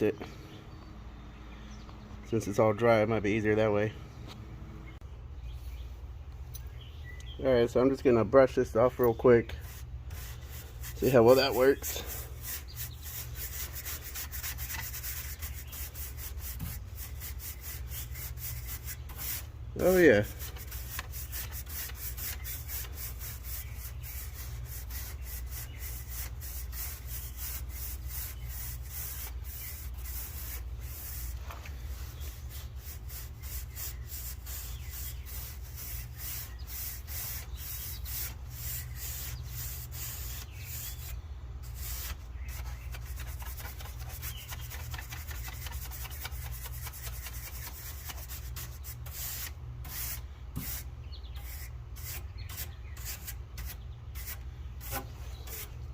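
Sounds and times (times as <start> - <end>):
brush scrubbing metal fins: 9.7 - 41.0.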